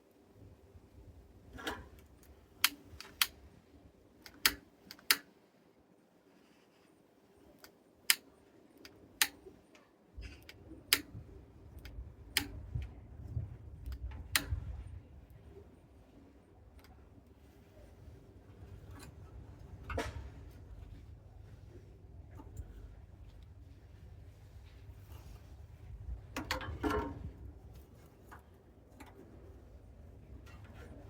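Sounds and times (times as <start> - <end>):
kindling snapping and clicking: 1.6 - 3.4, 4.2 - 5.3, 11.8 - 13.0
wind rumble on microphone: 10.2 - 28.4.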